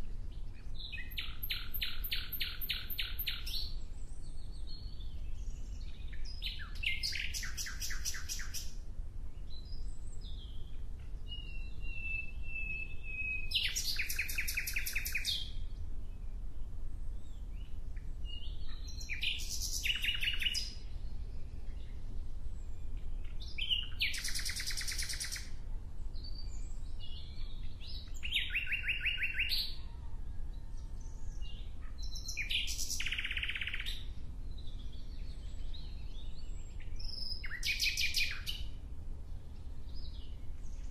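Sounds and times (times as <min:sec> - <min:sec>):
songbird trilling: 0:00.8 - 0:03.8, 0:06.1 - 0:08.8, 0:11.3 - 0:15.5, 0:18.3 - 0:20.8, 0:23.3 - 0:25.5, 0:26.3 - 0:30.0, 0:31.8 - 0:34.1, 0:34.7 - 0:38.7.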